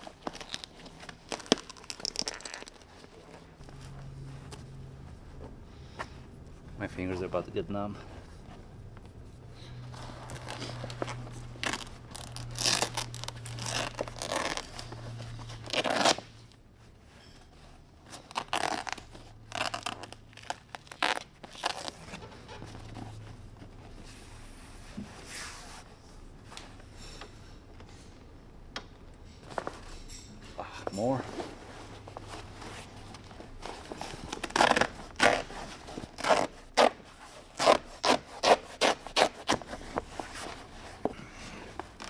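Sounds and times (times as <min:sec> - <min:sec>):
fabric ripping off a frame: 0:00.0 - 0:03.0, 0:09.7 - 0:16.4, 0:18.2 - 0:22.2, 0:33.4 - 0:40.8.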